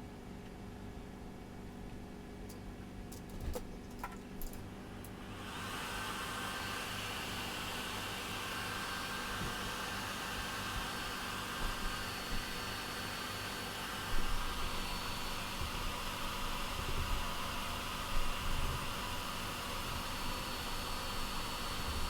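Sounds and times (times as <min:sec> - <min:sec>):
fan whirring hiss: 0:00.0 - 0:22.0.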